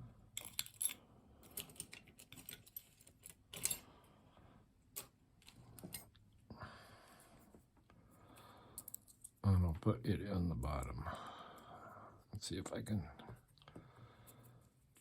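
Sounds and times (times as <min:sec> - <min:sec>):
small metal tools clinking: 0:00.4 - 0:03.9.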